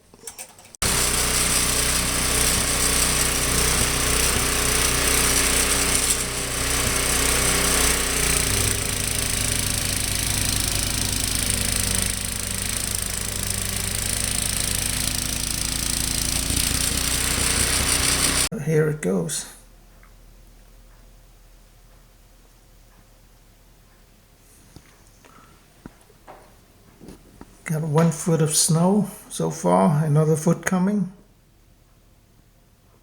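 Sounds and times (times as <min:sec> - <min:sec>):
small engine running: 0:00.8 - 0:18.5.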